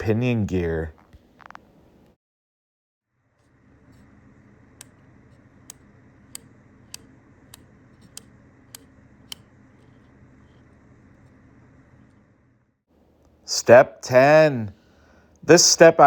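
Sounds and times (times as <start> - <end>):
low steady hum: 3.2 - 16.0.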